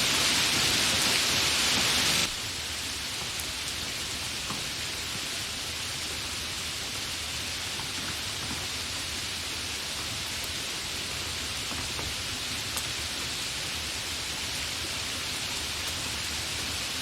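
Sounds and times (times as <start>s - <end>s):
steady rain: 0.0s - 17.0s
raindrop ticks: 11.7s - 13.0s.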